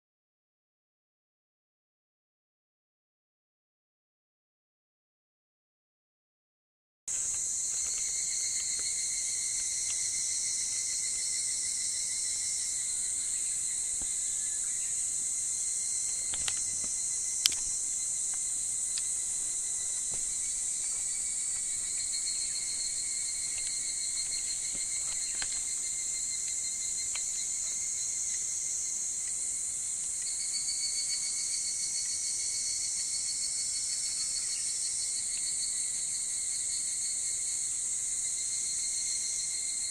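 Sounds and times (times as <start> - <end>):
cicadas chorus ringing: 7.1 - 39.9
sharp click: 17.4 - 17.7.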